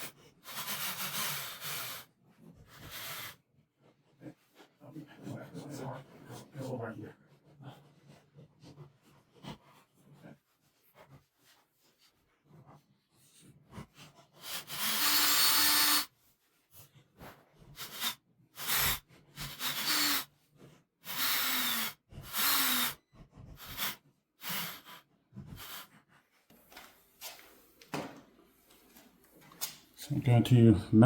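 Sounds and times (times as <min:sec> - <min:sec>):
cordless drill driving screws: 0:14.4 - 0:16.1, 0:17.8 - 0:20.3, 0:21.0 - 0:23.0.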